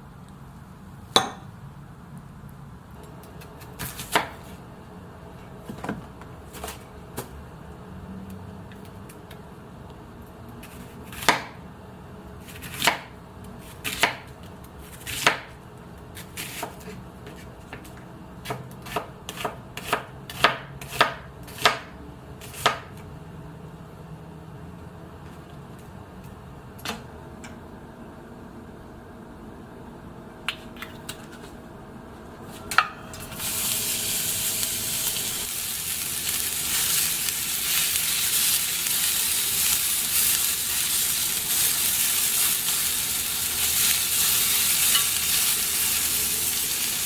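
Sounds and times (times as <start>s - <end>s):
knife chopping on cutting board: 10.6s - 11.6s, 13.8s - 14.2s, 14.9s - 15.5s, 16.2s - 23.0s
low steady hum: 23.0s - 47.0s.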